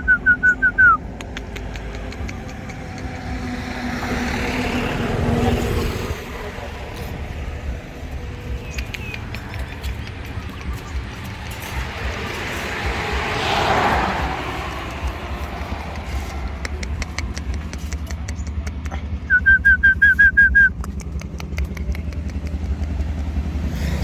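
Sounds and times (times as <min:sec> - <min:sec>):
low engine rumble: 0:00.0 - 0:24.0
vehicle passing: 0:00.0 - 0:24.0
sharp clicks: 0:00.8 - 0:03.2, 0:08.5 - 0:12.4, 0:14.4 - 0:23.6
high chirping notes: 0:19.2 - 0:21.0.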